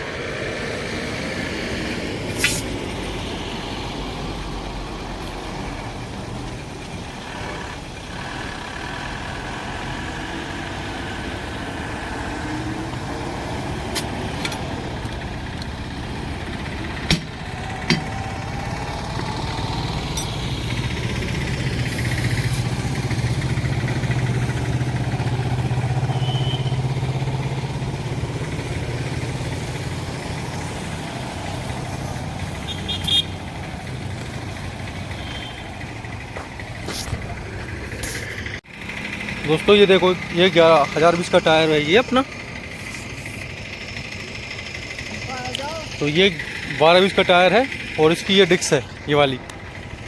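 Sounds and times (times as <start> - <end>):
motor engine humming: 0.0 - 50.0.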